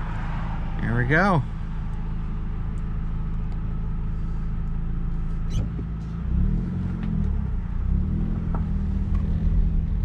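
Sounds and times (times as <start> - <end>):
small engine idling and revving: 4.1 - 10.0.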